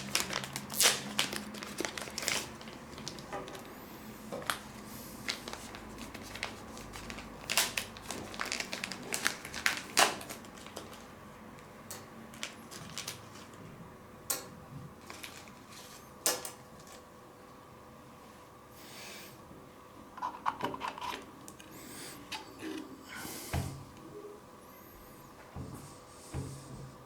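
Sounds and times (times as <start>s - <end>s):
plastic packaging crinkling: 0.0s - 3.7s, 4.4s - 13.6s, 15.0s - 17.0s.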